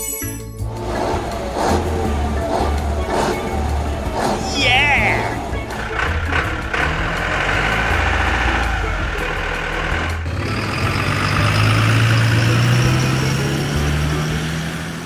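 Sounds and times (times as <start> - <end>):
vehicle engine running: 0.6 - 15.0.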